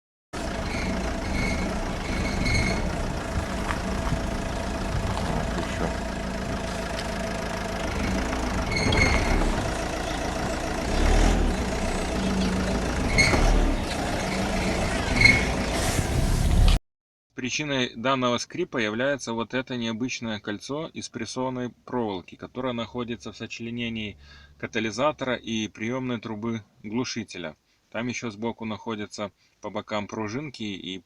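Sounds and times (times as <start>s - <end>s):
short high squeaks under car: 0.4s - 4.6s, 7.6s - 16.1s
diesel engine running: 0.4s - 16.7s.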